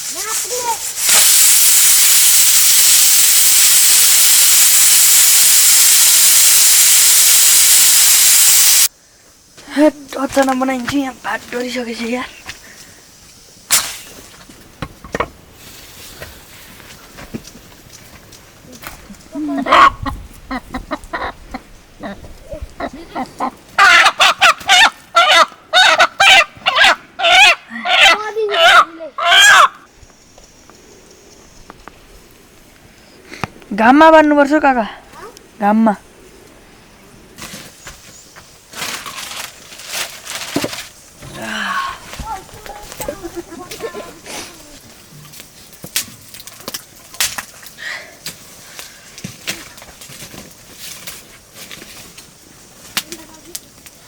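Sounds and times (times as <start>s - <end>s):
cooking pot hissing: 0.0s - 9.0s
chicken squawking: 19.6s - 22.2s, 22.8s - 29.9s.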